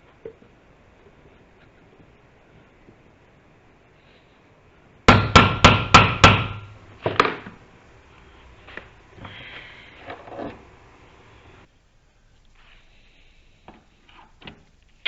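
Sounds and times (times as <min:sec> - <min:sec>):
handling scrape: 0:08.2 - 0:10.8.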